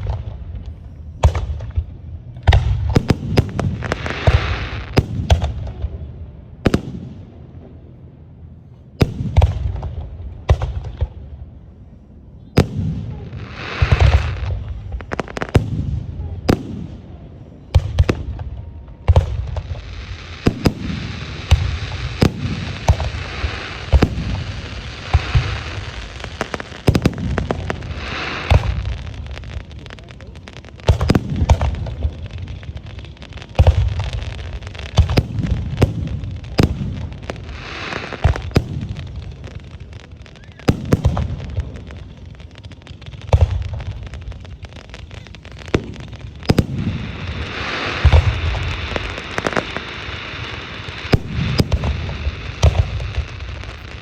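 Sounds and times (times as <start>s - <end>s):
hissing crackle: 19.2s - 54.0s.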